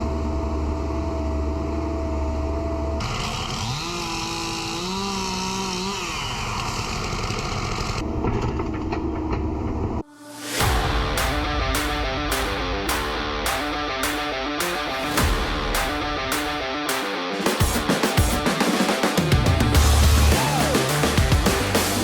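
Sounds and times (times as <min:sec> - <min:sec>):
engine revving: 0:00.0 - 0:08.0, 0:10.6 - 0:22.0
engine humming: 0:00.0 - 0:08.1, 0:19.1 - 0:22.0
electric guitar music: 0:10.6 - 0:22.0.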